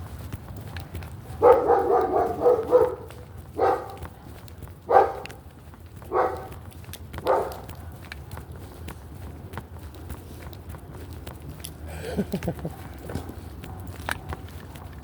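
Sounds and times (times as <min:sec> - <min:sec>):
dog barking: 0:01.2 - 0:04.1, 0:04.9 - 0:05.4, 0:06.1 - 0:06.6, 0:07.2 - 0:07.9, 0:12.6 - 0:14.4.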